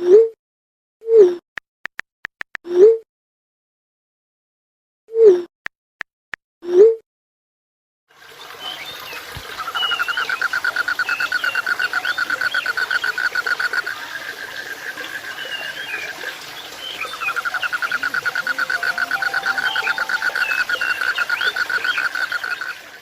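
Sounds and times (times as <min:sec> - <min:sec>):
short chirping calls: 0:17.0 - 0:22.7.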